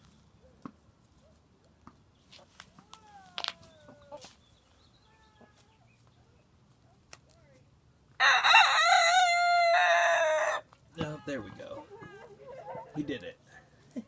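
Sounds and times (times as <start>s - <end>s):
chickens clucking: 3.3s - 6.4s, 9.2s - 13.2s
rooster crowing: 8.2s - 10.6s.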